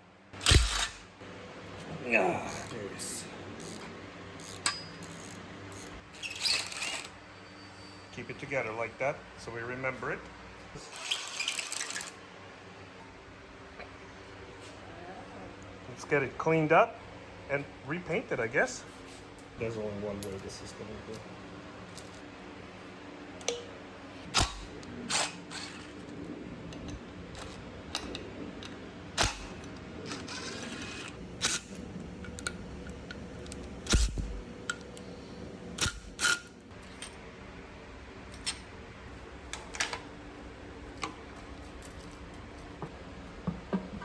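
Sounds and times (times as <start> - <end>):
metallic clicks of hand tools: 0.4 - 1.0, 35.8 - 37.2.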